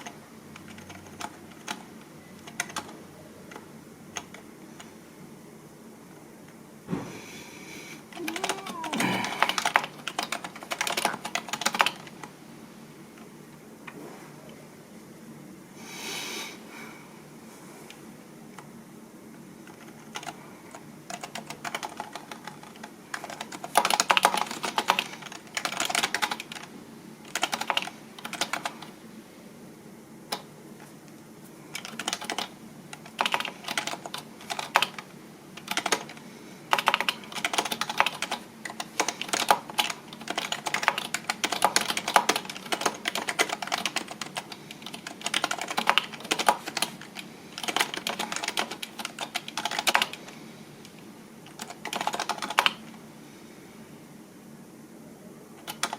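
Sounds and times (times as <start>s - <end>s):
computer keyboard typing: 0.0s - 4.9s, 8.1s - 12.3s, 19.6s - 28.9s, 30.3s - 30.5s, 31.7s - 50.3s, 51.4s - 53.0s, 55.6s - 55.9s.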